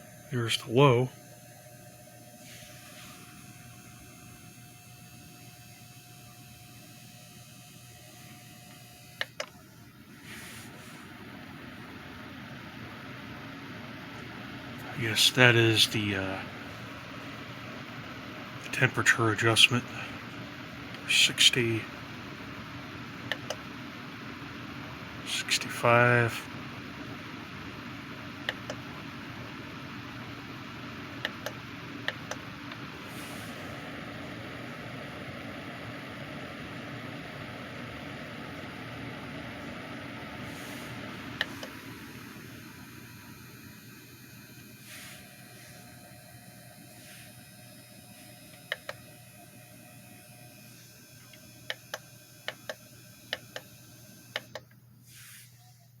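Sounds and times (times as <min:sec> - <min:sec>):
space heater fan running: 0:00.0 - 0:56.0
thermostat control clicks: 0:51.3 - 0:53.7, 0:54.3 - 0:54.8.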